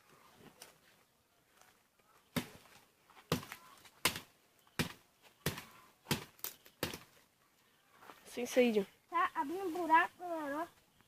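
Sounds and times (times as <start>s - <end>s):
chopping blows on wood: 3.3s - 7.1s.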